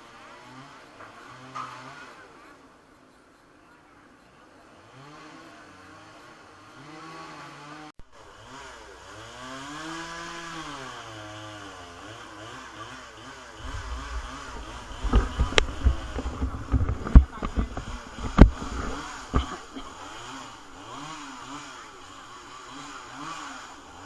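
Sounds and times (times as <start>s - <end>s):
chainsaw engine revving: 0.0s - 2.7s, 4.6s - 24.0s
low thumps and knocks: 13.6s - 21.0s.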